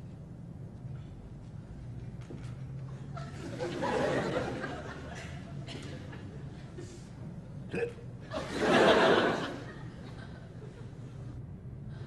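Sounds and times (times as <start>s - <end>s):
studio audience laughing: 3.2s - 7.0s, 8.3s - 11.1s.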